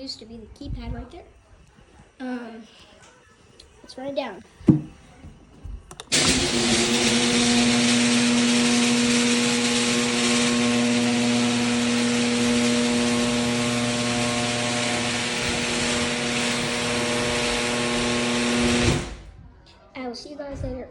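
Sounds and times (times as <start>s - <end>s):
garage door opener motor humming: 5.9s - 19.4s.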